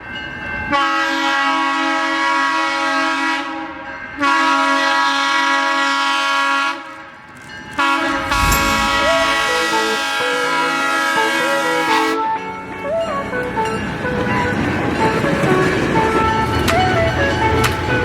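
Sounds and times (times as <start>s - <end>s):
low rumble: 8.0s - 9.8s.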